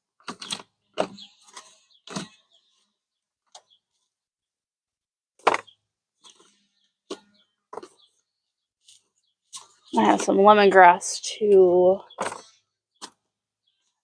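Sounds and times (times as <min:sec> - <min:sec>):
plastic plant pots knocking: 0:00.2 - 0:02.8, 0:05.4 - 0:08.2, 0:12.1 - 0:14.0.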